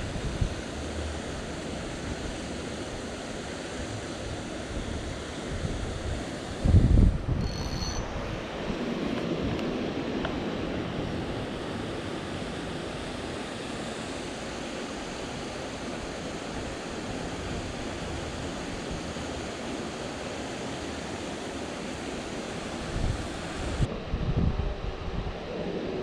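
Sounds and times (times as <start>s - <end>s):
wind: 0.0s - 26.0s
water flowing over a spillway: 11.6s - 23.9s.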